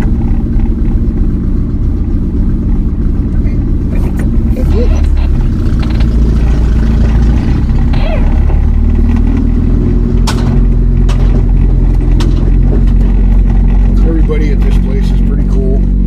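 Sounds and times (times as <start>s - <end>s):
truck engine and road noise: 0.0s - 16.0s
sharp clicks or knocks: 10.1s - 13.6s.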